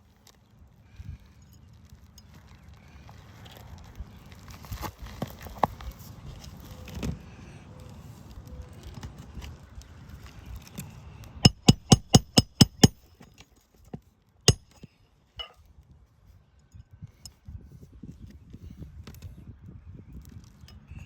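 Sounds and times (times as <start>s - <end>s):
hammer striking roofing nail: 11.5s - 13.0s, 14.5s - 14.8s.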